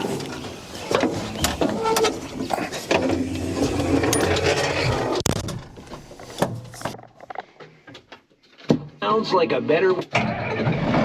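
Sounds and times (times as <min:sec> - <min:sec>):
tractor diesel engine running: 0:00.0 - 0:05.2.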